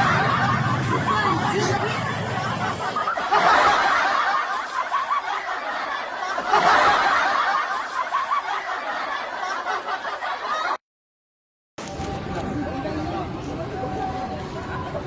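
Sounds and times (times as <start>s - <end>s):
people laughing and snickering: 0.0s - 10.8s.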